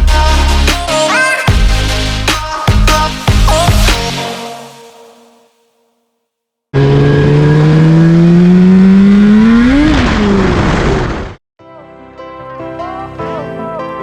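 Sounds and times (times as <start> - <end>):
two-stroke engine accelerating: 6.7 - 11.3.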